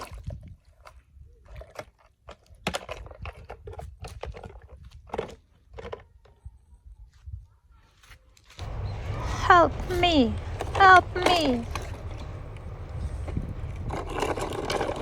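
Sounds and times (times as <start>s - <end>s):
toy cars clicking and rattling: 9.8s - 15.0s.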